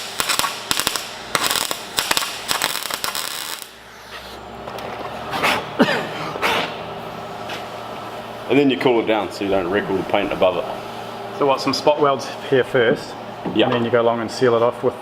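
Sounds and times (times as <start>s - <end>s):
arc welder crackling: 0.0s - 3.8s.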